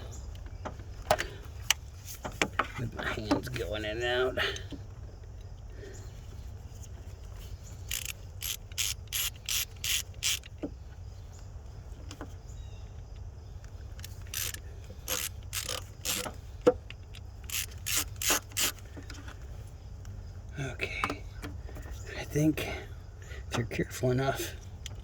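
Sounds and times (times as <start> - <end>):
hand ratchet clicking: 7.9 - 10.6, 14.0 - 16.4, 17.4 - 18.8.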